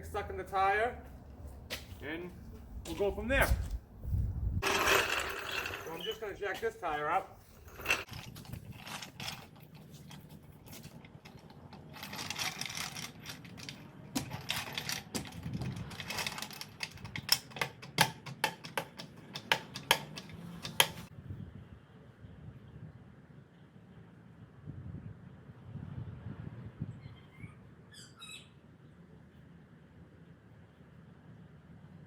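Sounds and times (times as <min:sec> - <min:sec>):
car jack scraping and clattering: 0:04.6 - 0:06.1, 0:07.6 - 0:10.0, 0:11.5 - 0:21.1
sharp metal clicks: 0:11.3 - 0:21.1.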